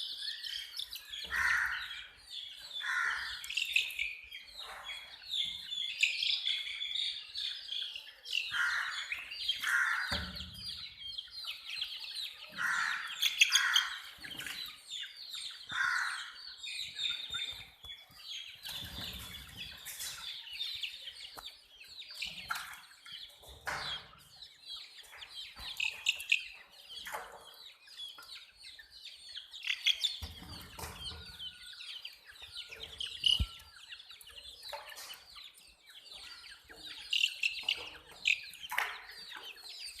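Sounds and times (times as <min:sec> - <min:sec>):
baby chicks chirping: 0:00.0 - 0:40.0.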